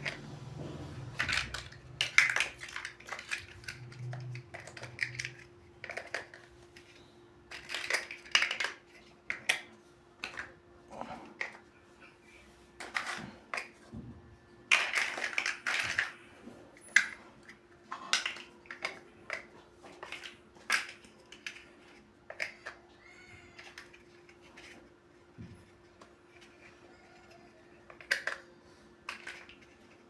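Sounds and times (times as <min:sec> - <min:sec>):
plastic bricks clicking and rattling: 0:01.1 - 0:10.6, 0:14.7 - 0:16.2, 0:16.9 - 0:24.9, 0:25.8 - 0:30.0.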